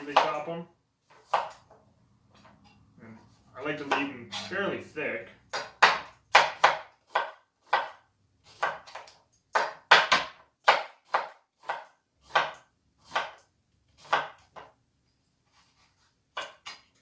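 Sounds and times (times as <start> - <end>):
knife chopping on cutting board: 0.0 - 0.4, 1.2 - 1.7, 5.5 - 14.7, 16.4 - 16.8.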